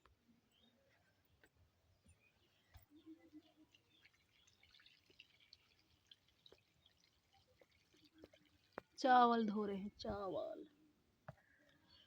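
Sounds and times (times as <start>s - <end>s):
faint clicks and water drips: 2.7s - 10.2s.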